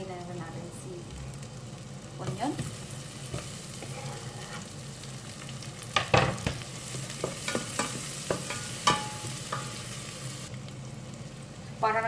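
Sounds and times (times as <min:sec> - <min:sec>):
onion sizzling in butter: 0:00.0 - 0:12.0
utensil scraping a pan: 0:03.3 - 0:04.8.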